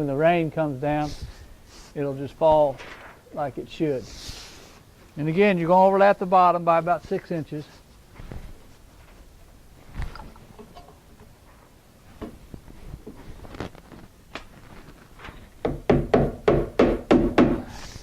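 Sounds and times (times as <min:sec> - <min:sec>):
paper rustling: 0:02.7 - 0:03.3, 0:13.2 - 0:15.5
hammer blows on nails: 0:15.6 - 0:18.0.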